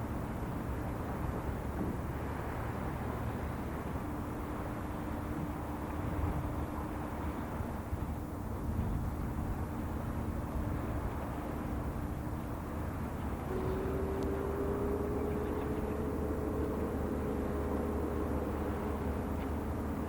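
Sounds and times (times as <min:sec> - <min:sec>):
low engine rumble: 0:00.0 - 0:20.0
rising humming tone: 0:10.8 - 0:20.0.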